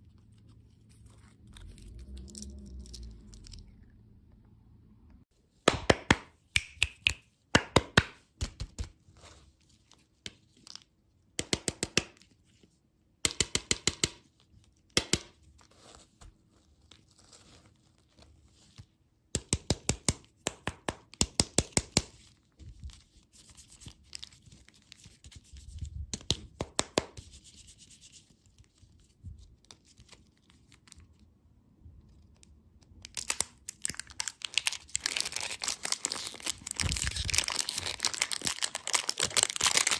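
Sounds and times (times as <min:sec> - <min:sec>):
crinkling wrappers: 0:33.0 - 0:39.9.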